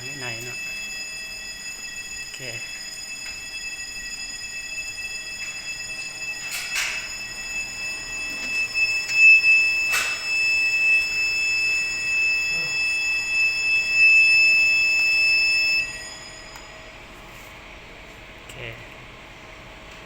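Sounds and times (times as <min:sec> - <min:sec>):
fire alarm high-pitched tone: 0:00.0 - 0:17.9.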